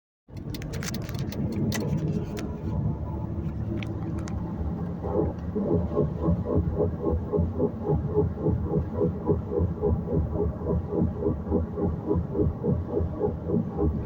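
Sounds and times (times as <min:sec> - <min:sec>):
sharp clicks: 0:00.3 - 0:02.5
car road rumble: 0:00.3 - 0:14.0
rhythmic wheel grinding: 0:00.4 - 0:14.0.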